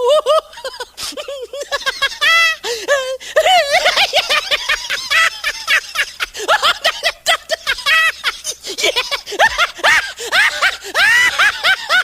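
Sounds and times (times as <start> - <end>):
high-pitched laughter: 0.0 - 12.0.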